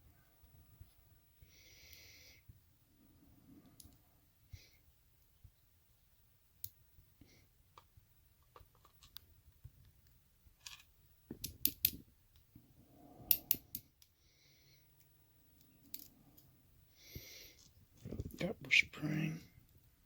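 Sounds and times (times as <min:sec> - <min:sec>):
small metallic clicks and taps: 0:10.7 - 0:12.0, 0:13.3 - 0:14.1.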